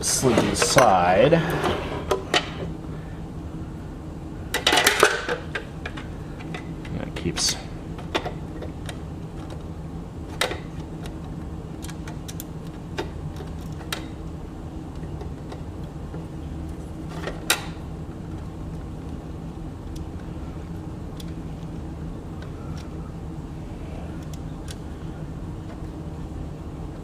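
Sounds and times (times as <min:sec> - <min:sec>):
low background hum: 0:00.0 - 0:27.0.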